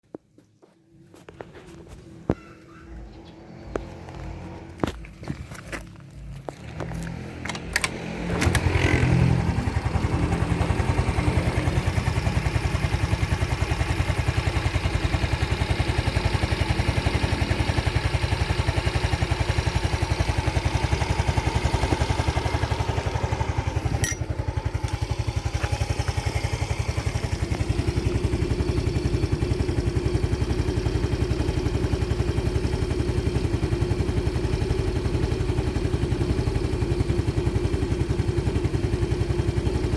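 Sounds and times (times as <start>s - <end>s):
motorcycle engine running: 1.1s - 39.9s
clicks: 6.6s - 9.0s.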